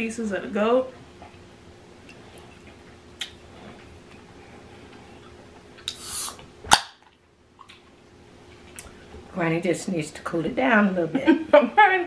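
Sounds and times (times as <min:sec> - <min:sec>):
short breathy hiss: 0:05.9 - 0:06.4.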